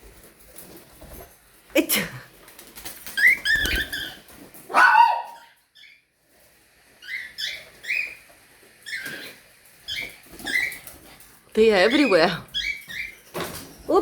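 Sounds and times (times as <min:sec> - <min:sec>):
parrots chirping: 0:03.0 - 0:06.1, 0:07.0 - 0:10.9, 0:11.6 - 0:14.0.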